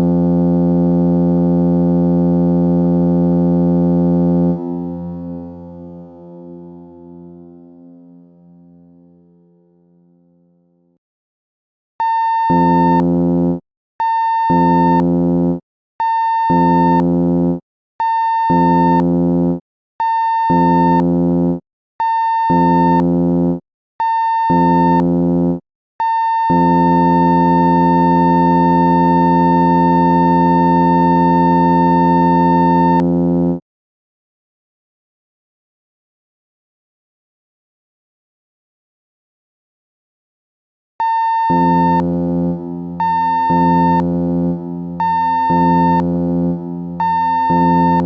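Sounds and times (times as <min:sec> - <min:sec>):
ship emergency alarm blasts: 0:12.0 - 0:19.3, 0:20.0 - 0:23.1, 0:24.0 - 0:25.2, 0:26.0 - 0:33.3, 0:41.0 - 0:48.0.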